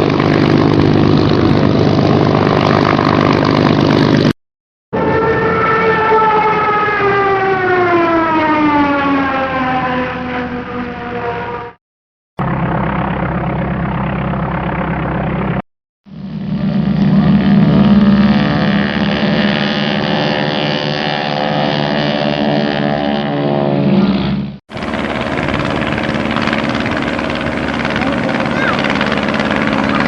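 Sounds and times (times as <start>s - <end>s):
aircraft engine drone: 0.0s - 4.4s, 5.0s - 11.8s, 12.4s - 30.0s
bright aircraft engine sound: 0.0s - 4.4s, 12.4s - 30.0s.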